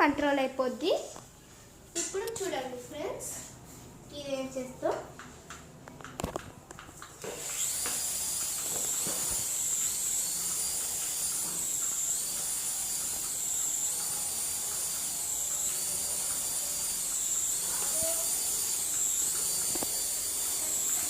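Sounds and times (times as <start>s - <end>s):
toy helicopter motor whine: 7.2s - 21.0s
spinning rotors hiss: 7.4s - 21.0s.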